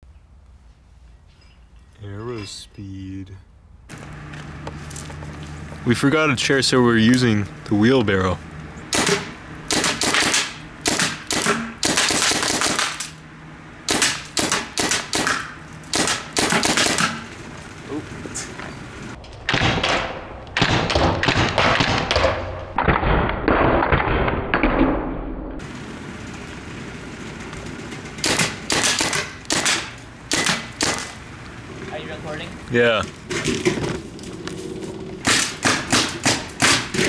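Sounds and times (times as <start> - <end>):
paintballs hitting plastic fan: 7.0 - 19.2, 25.6 - 34.5, 35.2 - 37.0
paintball gun firing: 7.0 - 24.2, 28.1 - 31.9, 35.2 - 37.0.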